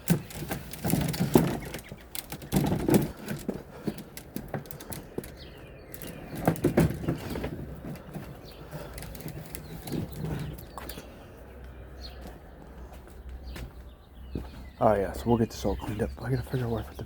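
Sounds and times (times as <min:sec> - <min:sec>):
objects knocking and thudding: 0:00.0 - 0:11.0.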